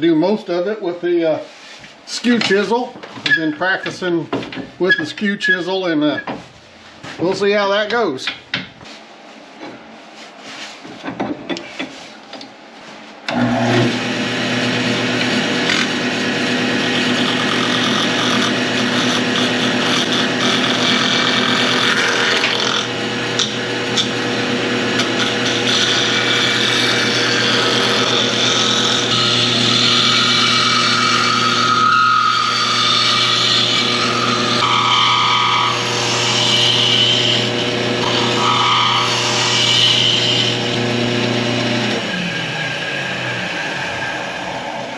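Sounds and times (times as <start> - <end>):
chisel scraping spinning wood: 13.3 - 44.9
wood lathe humming: 13.3 - 44.9.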